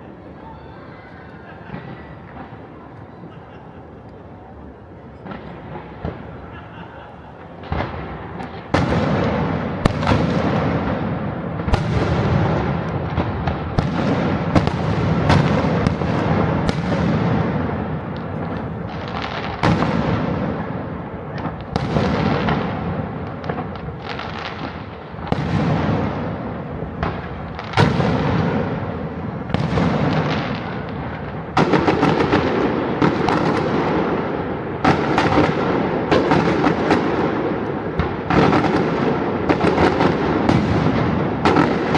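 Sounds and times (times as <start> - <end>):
fireworks crackling: 0.0 - 41.9
fireworks bangs: 5.0 - 41.9.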